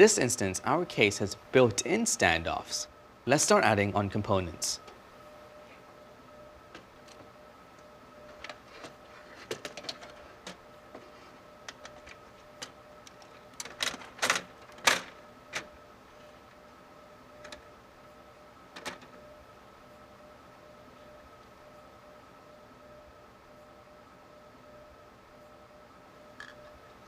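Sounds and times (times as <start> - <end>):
faint steady hum: 0.0 - 27.0
computer parts clicking: 11.7 - 15.7.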